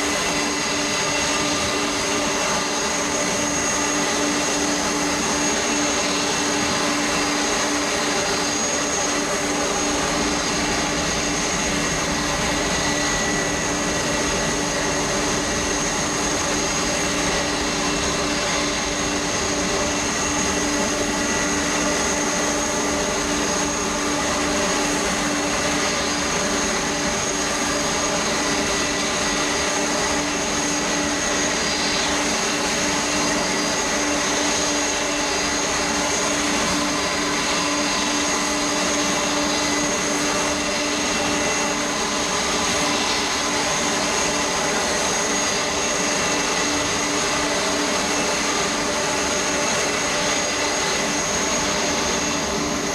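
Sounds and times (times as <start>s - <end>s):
jet engines idling: 0.0s - 52.9s.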